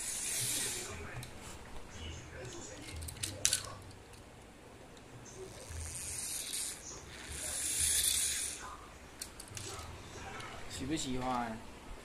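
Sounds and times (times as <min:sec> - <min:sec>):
speech: 0:09.7 - 0:11.7.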